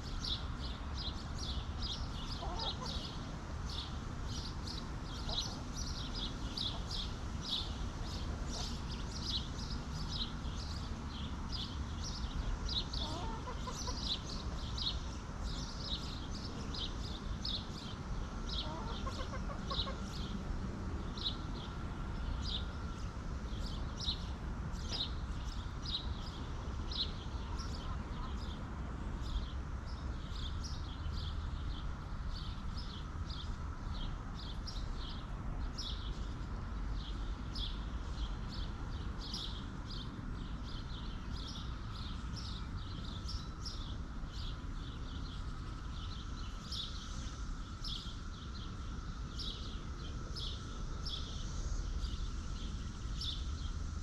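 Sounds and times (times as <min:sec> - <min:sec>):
low outdoor rumble: 0:00.0 - 0:54.0
small birds chirping: 0:00.0 - 0:54.0.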